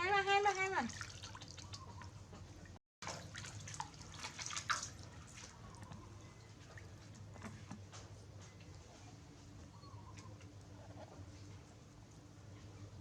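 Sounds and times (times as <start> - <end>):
water dripping in a bath: 0.0 - 7.9.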